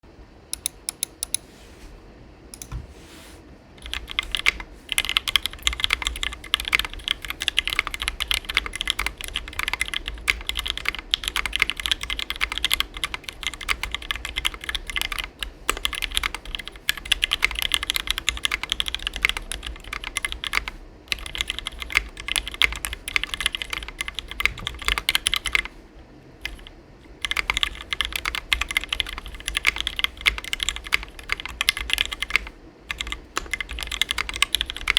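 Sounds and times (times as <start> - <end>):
fast mechanical keyboard typing: 3.8 - 25.7, 26.4 - 34.9.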